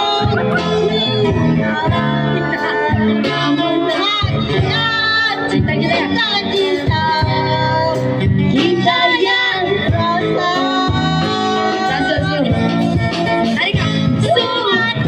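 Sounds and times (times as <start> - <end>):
guitar accompaniment: 0.0 - 15.0
woman singing: 0.0 - 15.0.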